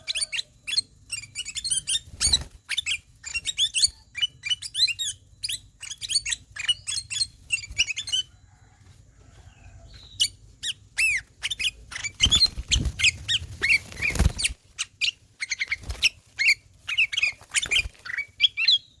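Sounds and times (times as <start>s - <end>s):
rustling noise: 12.1s - 14.8s.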